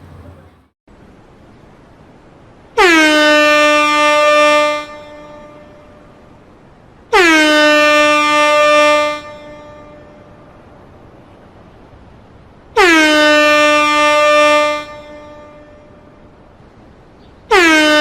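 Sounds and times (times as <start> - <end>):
air horn blasts: 2.8 - 6.3, 7.1 - 10.4, 12.8 - 16.3, 17.5 - 18.0.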